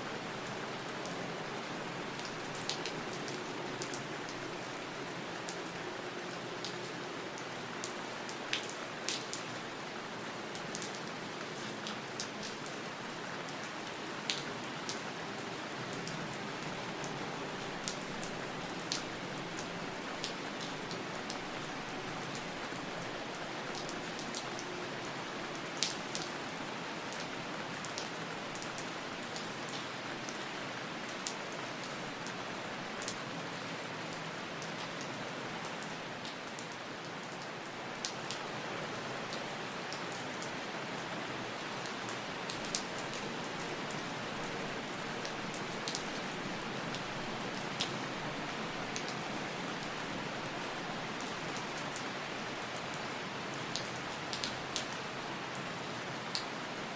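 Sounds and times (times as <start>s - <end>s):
steady rain hiss: 0.0s - 56.9s
raindrops ticking on a surface: 0.2s - 38.4s, 39.0s - 55.6s, 56.3s - 56.6s.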